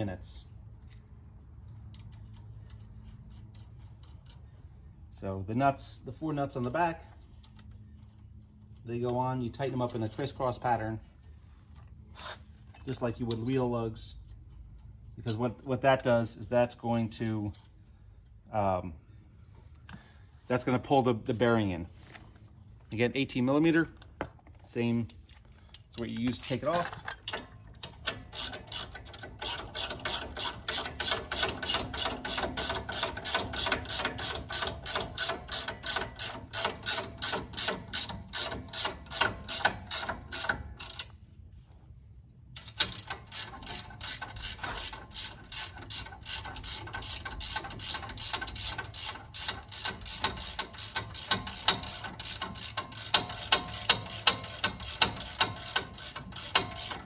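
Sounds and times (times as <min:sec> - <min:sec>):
hand ratchet clicking: 0:25.7 - 0:41.1, 0:42.6 - 0:57.0.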